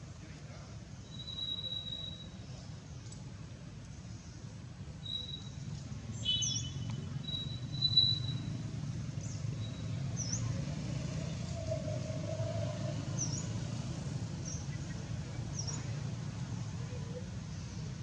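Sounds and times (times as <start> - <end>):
small animal chirps and whistles: 1.1 - 2.3, 6.2 - 8.5.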